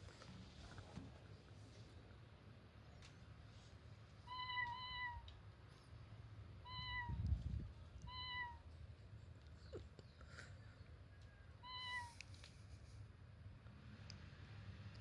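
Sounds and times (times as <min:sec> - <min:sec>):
short cat meows: 0:11.6 - 0:12.2.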